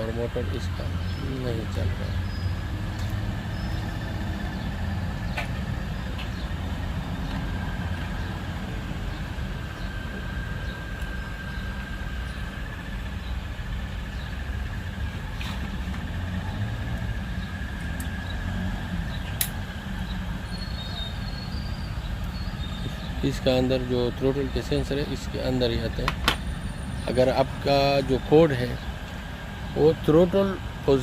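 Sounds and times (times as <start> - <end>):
machinery rumbling: 0.0 - 31.0.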